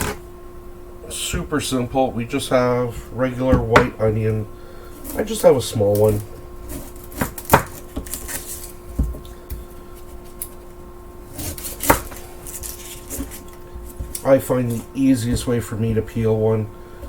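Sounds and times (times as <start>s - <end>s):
knife knocking on cutting board: 3.5s - 4.0s.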